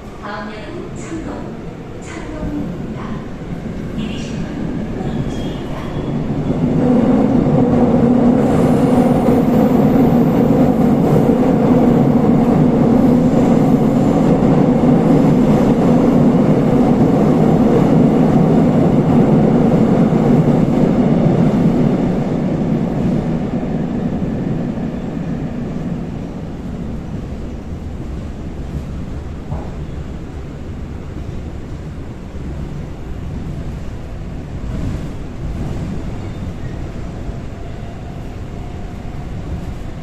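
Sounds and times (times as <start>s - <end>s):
train wheels rumbling on rail: 0.0s - 40.0s.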